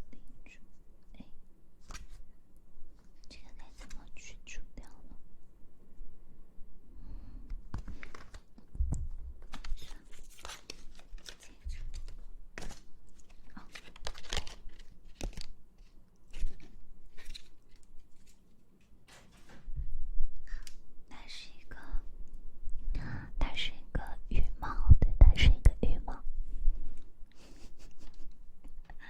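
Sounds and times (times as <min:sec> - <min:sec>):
rustling and crinkling: 0:01.8 - 0:04.3, 0:07.5 - 0:20.8.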